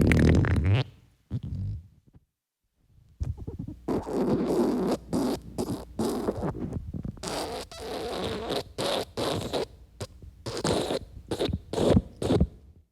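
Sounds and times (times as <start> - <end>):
person defecating and passing gas: 0.0 - 1.8.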